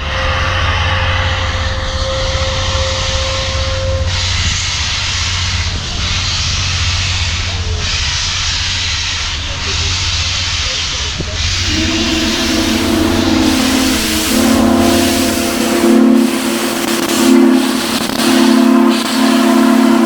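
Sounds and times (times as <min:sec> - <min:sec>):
steam train roaring: 0:00.0 - 0:20.0
thin high tone: 0:11.5 - 0:18.6.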